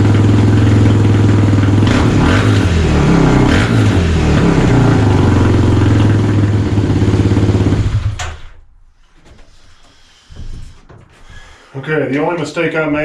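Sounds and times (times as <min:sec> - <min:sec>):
motorcycle engine running: 0:00.0 - 0:08.7.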